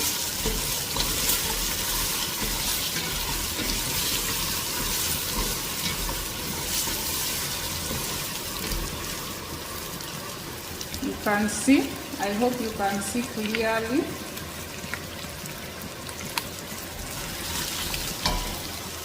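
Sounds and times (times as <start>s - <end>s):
beef sizzling in a saucepan: 0.0s - 19.0s.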